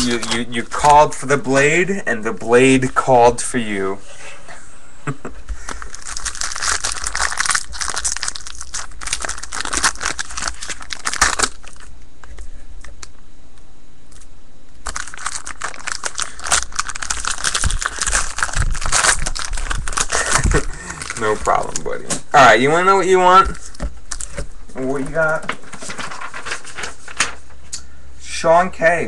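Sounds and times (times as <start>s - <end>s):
plastic wrapper crinkling and tearing: 0.0s - 0.5s, 5.6s - 13.1s, 14.8s - 22.1s, 23.5s - 27.4s.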